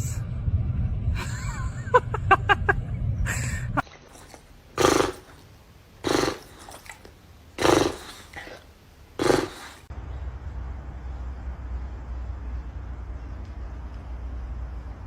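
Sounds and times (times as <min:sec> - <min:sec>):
dog growling: 0:04.1 - 0:09.9.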